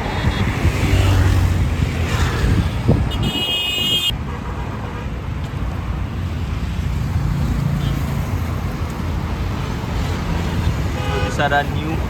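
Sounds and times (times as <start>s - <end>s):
car engine and road rumble: 0.0s - 12.0s
high-pitched horn toot: 3.1s - 4.2s.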